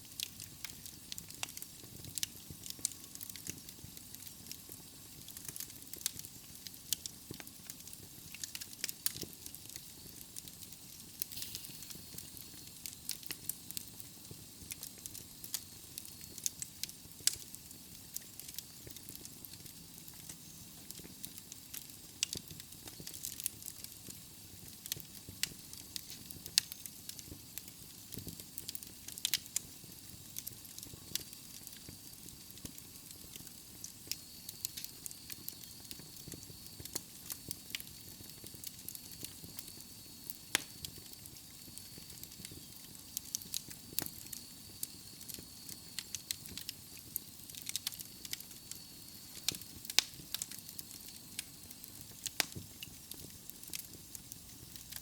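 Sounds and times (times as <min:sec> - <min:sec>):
fire hissing: 0:00.0 - 0:55.0
wood crackling and popping: 0:00.0 - 0:55.0.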